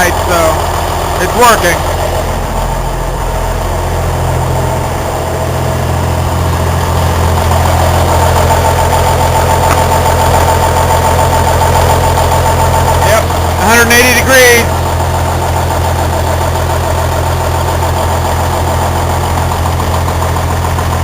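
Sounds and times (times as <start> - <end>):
high-pitched whine: 0.0 - 14.7
diesel engine idling: 0.0 - 21.0.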